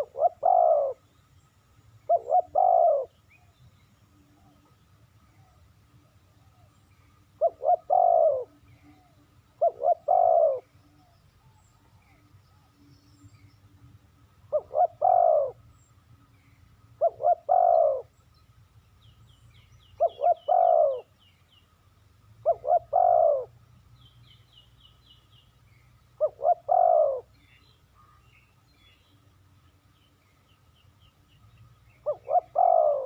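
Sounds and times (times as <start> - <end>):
dove cooing: 0.0 - 1.1, 2.0 - 3.2, 7.4 - 12.8, 14.5 - 15.7, 17.0 - 18.2, 20.0 - 21.2, 22.4 - 23.6, 26.2 - 28.2, 32.0 - 33.0.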